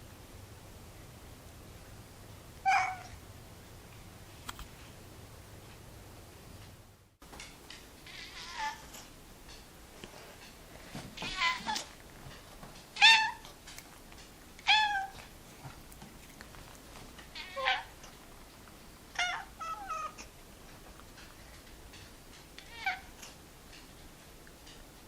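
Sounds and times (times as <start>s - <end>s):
cat meowing: 2.6s - 3.1s, 8.1s - 8.9s, 11.2s - 11.9s, 13.0s - 13.4s, 14.6s - 15.2s, 17.3s - 18.0s, 19.1s - 20.2s, 22.6s - 23.2s.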